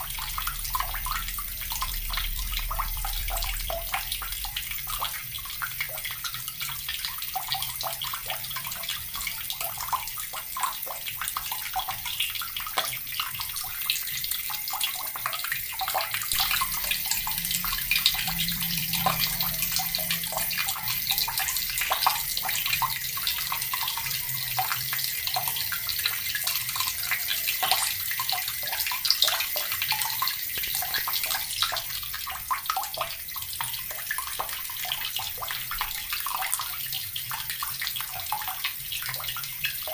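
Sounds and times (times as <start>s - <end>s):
tap water pouring into bucket: 0.0s - 39.9s.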